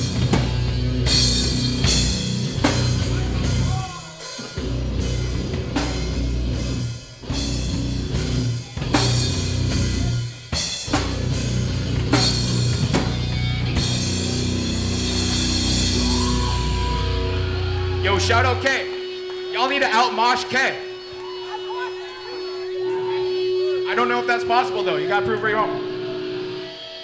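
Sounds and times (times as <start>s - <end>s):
loud drum kit with cymbals: 0.0s - 19.0s
rock band playing heavy music: 0.0s - 27.0s.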